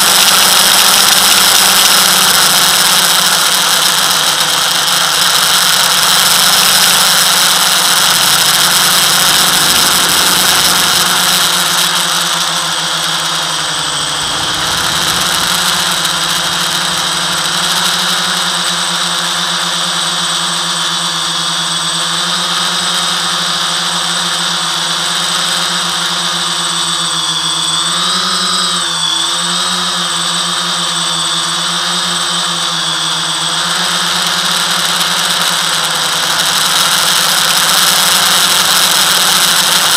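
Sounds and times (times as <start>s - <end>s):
drone propellers whining: 0.0s - 22.2s.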